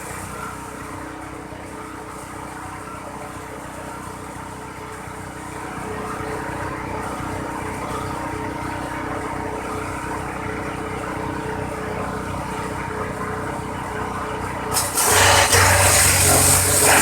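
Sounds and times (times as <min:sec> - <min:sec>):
chopper shredding stalks: 0:14.7 - 0:17.0
motor humming: 0:14.7 - 0:17.0.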